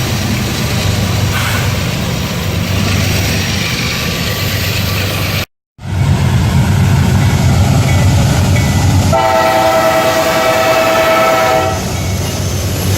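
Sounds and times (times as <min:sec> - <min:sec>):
diesel locomotive rumbling: 0:00.0 - 0:12.9
locomotive air horn blast: 0:09.1 - 0:11.9.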